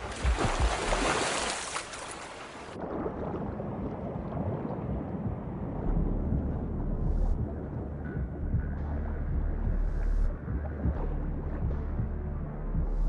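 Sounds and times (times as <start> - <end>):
water splashing and sloshing: 0.0 - 12.9
low underwater rumble: 2.8 - 13.0.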